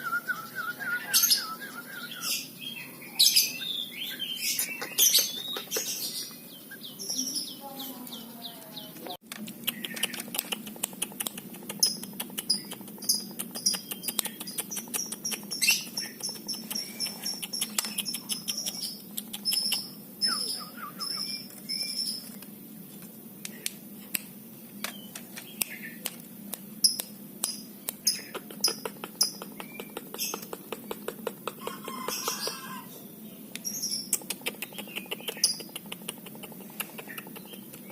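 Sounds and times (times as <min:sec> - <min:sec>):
bird chirping: 0:00.0 - 0:22.5, 0:26.8 - 0:37.9
sharp clicks and taps: 0:09.0 - 0:19.9, 0:23.4 - 0:32.5, 0:33.5 - 0:37.9.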